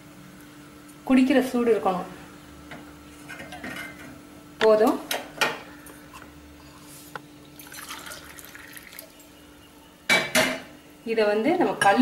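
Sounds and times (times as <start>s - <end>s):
water trickling and dripping: 7.4s - 9.4s.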